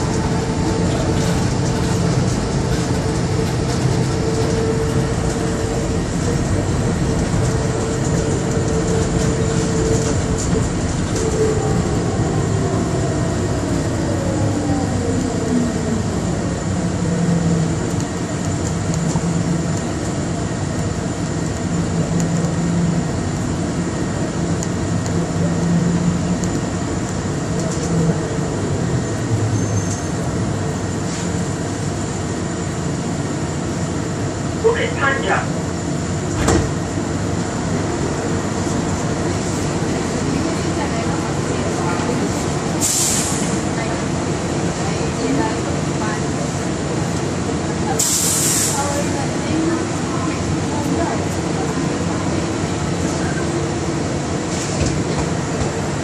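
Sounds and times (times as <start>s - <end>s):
train motor whine: 0.0s - 28.4s
rolling rumble: 0.0s - 31.0s.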